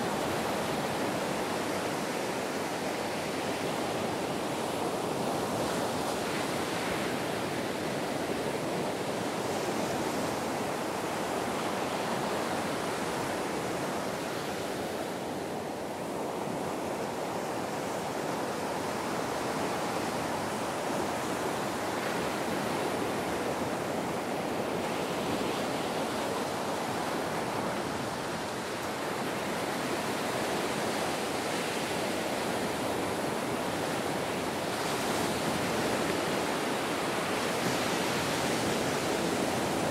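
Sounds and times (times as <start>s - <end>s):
ocean waves breaking on beach: 0.0s - 39.9s.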